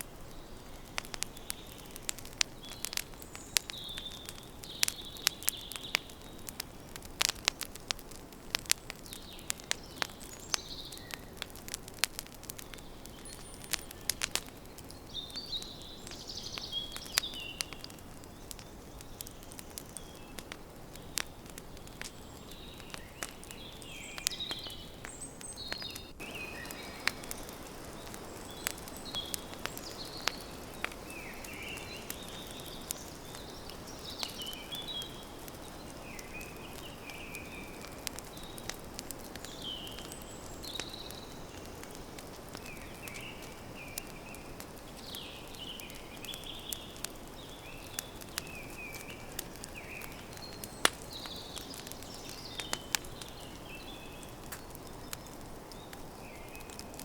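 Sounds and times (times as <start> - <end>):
birds chirping: 0.0 - 57.0
campfire crackling and popping: 0.0 - 57.0.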